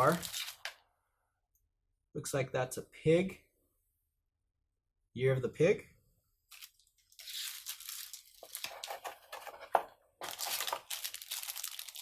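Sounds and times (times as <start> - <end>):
plastic packaging crinkling: 0.0 - 0.8, 6.5 - 12.0.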